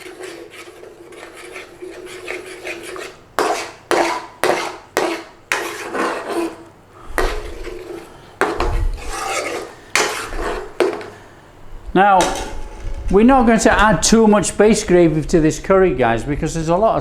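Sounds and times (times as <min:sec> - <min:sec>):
spoon scraping a pan: 0:00.0 - 0:11.2, 0:12.2 - 0:13.6.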